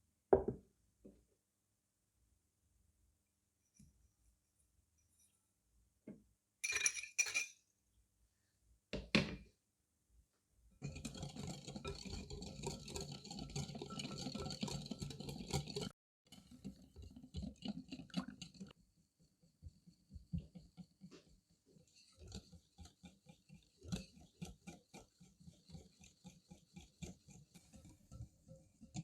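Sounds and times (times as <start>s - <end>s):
utensil clinking against bowl: 6.6s - 7.6s
clattering mixing in bowl: 10.8s - 18.8s.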